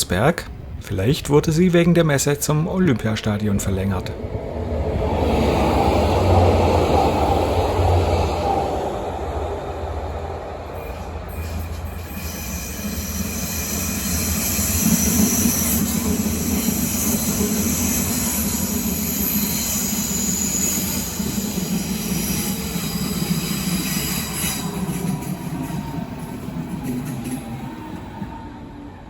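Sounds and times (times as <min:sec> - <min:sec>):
electric train rumbling: 0:00.0 - 0:29.0
high wheel squeal: 0:10.8 - 0:28.0.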